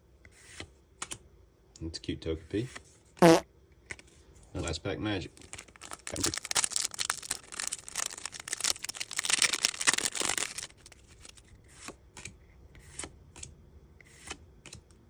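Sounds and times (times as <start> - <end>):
foil pack tearing and crinkling: 5.4 - 11.4.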